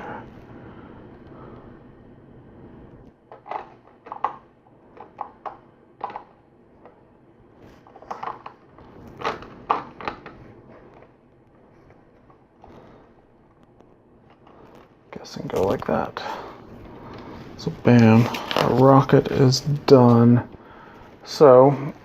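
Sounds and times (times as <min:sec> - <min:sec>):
plastic bricks clicking together: 0:05.0 - 0:06.4.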